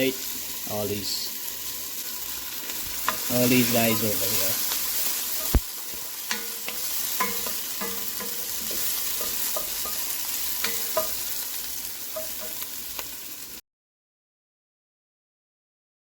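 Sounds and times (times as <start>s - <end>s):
onions sizzling in a pot: 0.0s - 13.6s
spoon clinking against pot: 5.4s - 11.2s, 12.2s - 12.6s.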